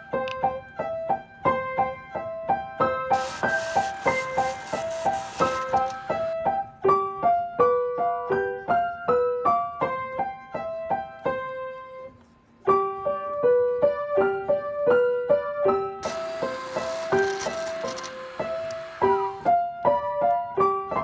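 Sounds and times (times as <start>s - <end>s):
hissing noise: 3.2s - 6.4s, 16.0s - 19.5s.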